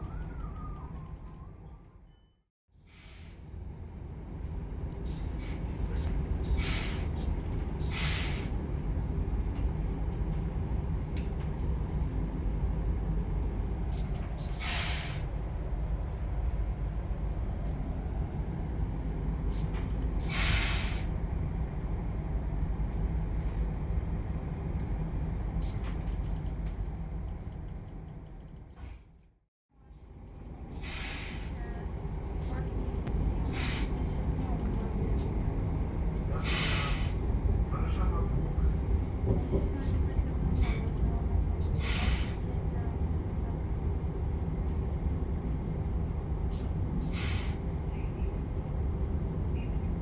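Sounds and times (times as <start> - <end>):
short hissing bursts: 6.4 - 7.1, 7.8 - 8.5, 14.4 - 15.3, 20.2 - 21.1, 30.8 - 31.6, 33.5 - 34.0, 36.4 - 37.2, 41.8 - 42.4, 46.5 - 47.6
train wheels rumbling on track: 30.4 - 49.2.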